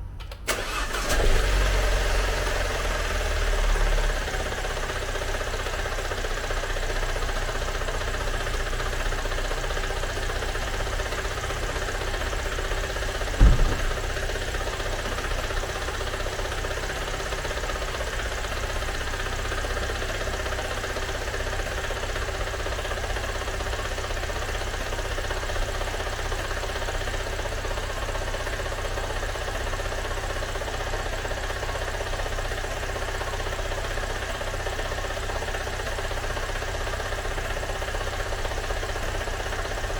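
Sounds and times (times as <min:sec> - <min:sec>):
car engine idling: 0:00.0 - 0:39.9
sharp thump: 0:13.3 - 0:15.7.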